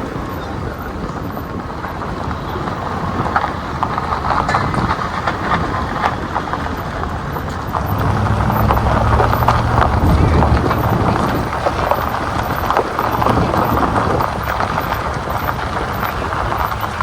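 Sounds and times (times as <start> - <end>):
road rumble: 0.0 - 17.0
low engine hum: 0.5 - 17.0
ticking and rattling: 4.3 - 17.0.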